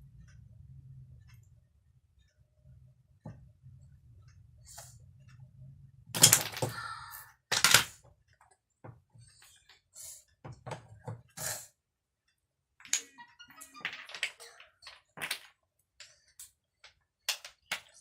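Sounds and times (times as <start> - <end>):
wooden blocks knocking together: 6.2 - 6.8, 7.5 - 8.0, 12.8 - 15.6, 16.8 - 18.0.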